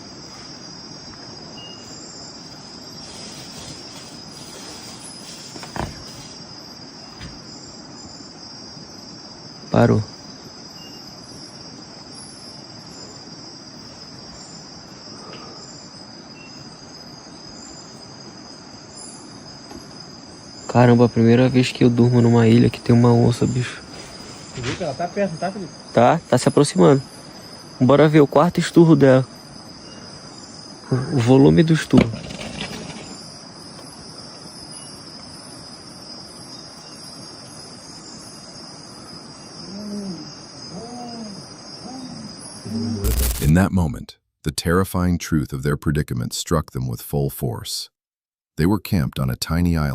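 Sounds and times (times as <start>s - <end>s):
crickets and insects trilling: 0.0s - 44.0s, 44.6s - 47.7s, 48.6s - 49.9s
faint background hiss: 0.0s - 47.9s
low animal calls: 39.6s - 43.4s.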